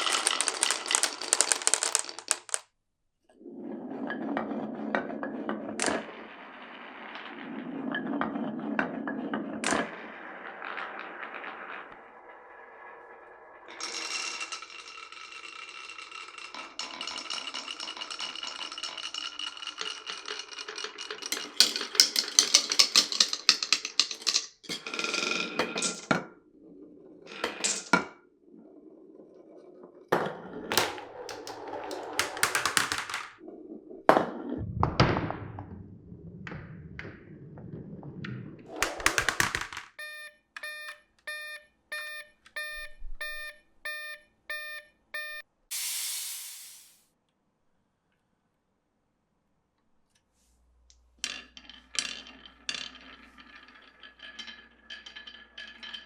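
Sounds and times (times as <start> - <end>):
marbles clacking and knocking: 0.0 - 2.7, 3.7 - 26.2, 27.3 - 28.1, 29.6 - 34.2, 37.8 - 40.0, 45.7 - 47.0
marbles rolling on wooden track: 0.0 - 2.7, 3.4 - 35.5, 36.5 - 40.0, 51.2 - 56.0
toy crossing signal dinging: 40.0 - 45.4.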